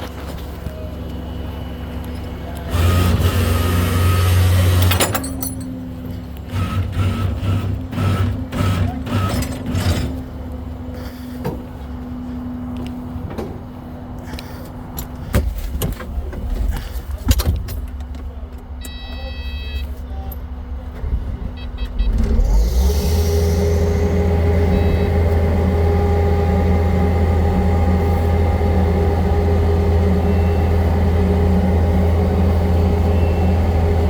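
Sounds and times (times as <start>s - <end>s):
hydraulic noise surges: 0.0s - 5.3s, 6.4s - 12.4s, 20.6s - 34.0s
diesel machinery running: 0.0s - 34.0s.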